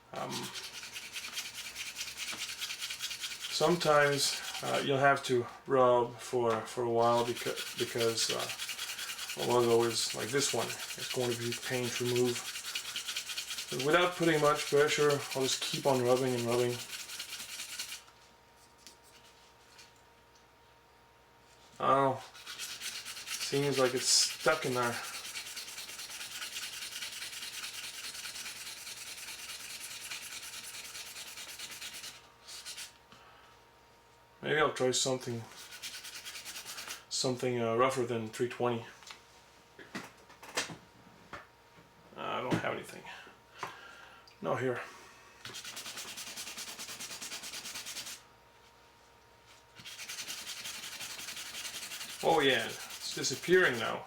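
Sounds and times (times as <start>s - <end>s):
wet sandpaper rubbing: 0.2s - 4.8s, 7.0s - 18.0s, 22.2s - 32.9s, 35.5s - 37.0s, 45.5s - 48.2s, 49.8s - 54.0s.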